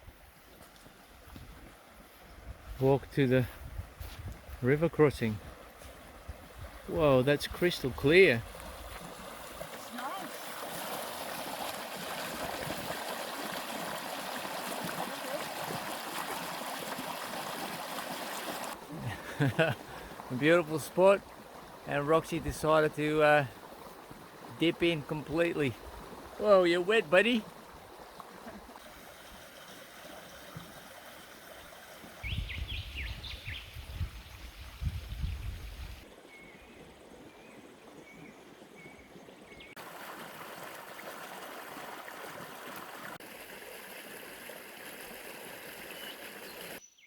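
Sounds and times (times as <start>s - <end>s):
creek flowing: 0.0s - 46.8s
river running over stones: 5.2s - 32.2s, 39.4s - 46.8s
bird chirping: 45.9s - 47.0s.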